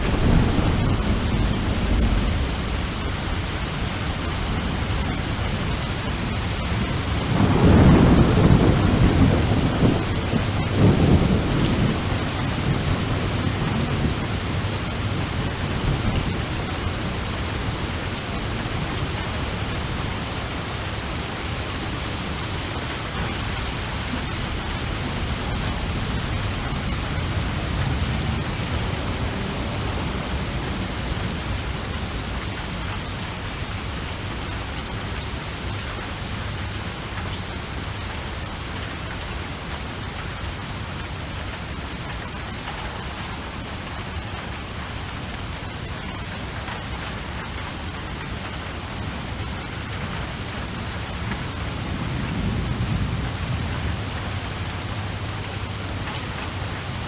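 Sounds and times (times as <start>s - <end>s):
thunder rumbling: 0.0s - 34.3s, 50.2s - 57.0s
steady rain: 0.0s - 57.0s.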